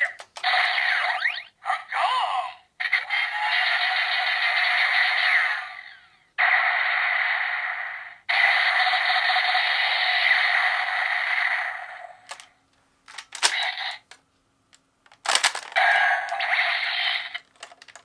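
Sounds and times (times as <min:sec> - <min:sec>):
toy mechanical clicks: 0:00.0 - 0:01.5, 0:09.4 - 0:12.5, 0:13.1 - 0:14.2, 0:15.1 - 0:18.0
toy hissing sound effect: 0:02.8 - 0:12.4, 0:15.8 - 0:17.5.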